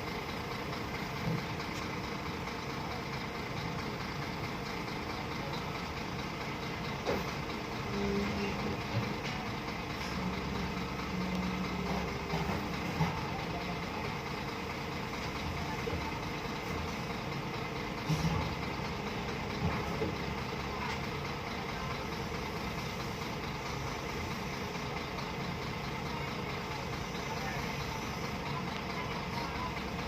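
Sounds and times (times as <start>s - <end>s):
heavy diesel engine running: 0.0s - 30.0s.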